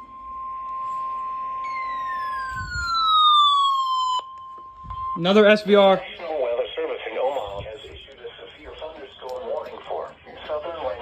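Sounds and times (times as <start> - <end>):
tone sliding down in pitch: 0.0 - 5.8
steady warning alarm tone: 0.0 - 10.1.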